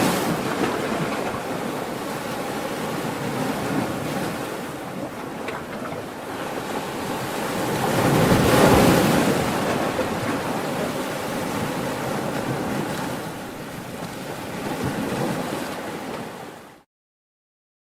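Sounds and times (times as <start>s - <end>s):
ocean waves breaking: 0.0s - 16.8s
surf washing: 0.0s - 16.8s.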